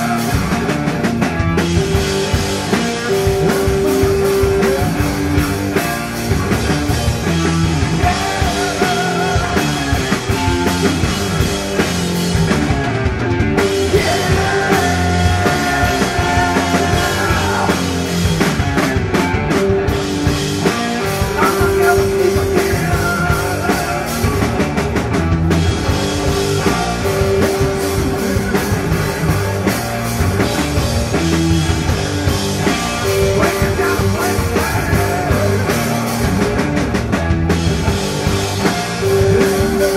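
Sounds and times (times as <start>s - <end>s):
rock band playing live: 0.0s - 39.9s.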